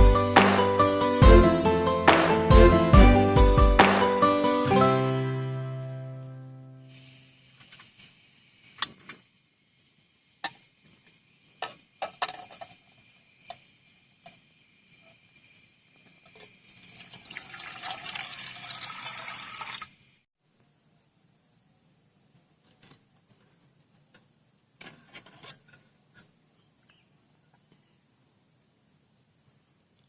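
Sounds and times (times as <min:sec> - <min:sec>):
faint steady hiss: 0:05.7 - 0:30.0
water pouring and splashing: 0:16.3 - 0:20.0.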